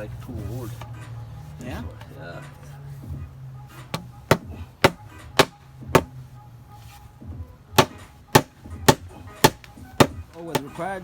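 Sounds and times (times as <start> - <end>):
hammer knocking wood: 4.0 - 6.2, 7.8 - 10.8.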